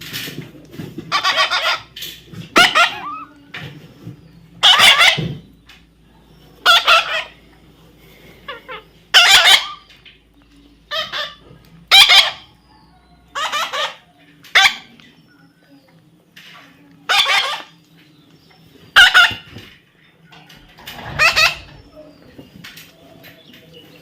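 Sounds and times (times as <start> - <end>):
parrot squawking: 1.1 - 1.9, 2.6 - 3.3, 4.6 - 5.3, 6.6 - 7.4, 8.5 - 9.9, 10.9 - 12.5, 13.3 - 14.9, 17.1 - 17.7, 19.0 - 19.5, 21.0 - 21.9.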